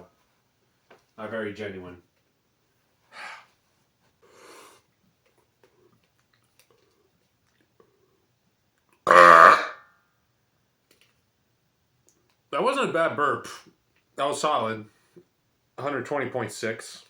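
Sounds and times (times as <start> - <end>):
man burping: 9.1 - 9.8.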